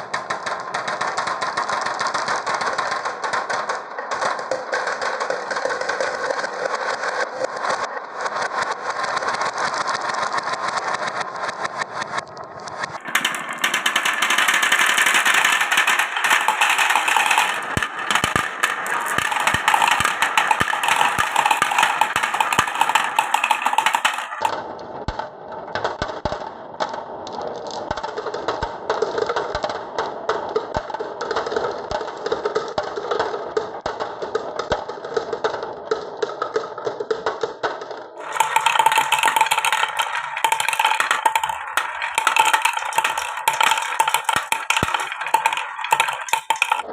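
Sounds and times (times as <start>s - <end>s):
marbles rolling down wooden run: 0.0s - 11.7s, 12.8s - 24.6s, 27.2s - 46.9s.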